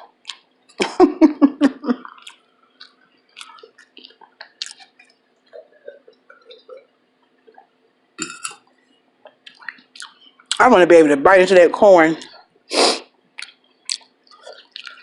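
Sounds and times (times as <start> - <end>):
wet chewing: 0.1 - 0.5, 2.0 - 7.8, 8.6 - 10.6, 13.3 - 15.0.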